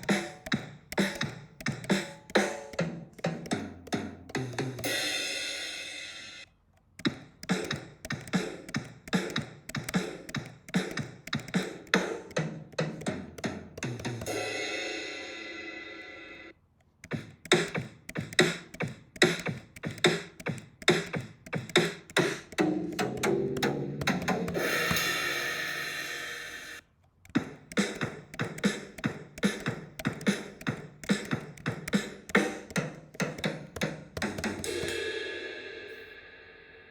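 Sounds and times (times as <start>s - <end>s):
drum kit beat: 0.0s - 6.4s, 7.0s - 36.9s
ringing cymbal wash: 14.3s - 16.5s, 24.6s - 26.8s, 34.6s - 36.9s.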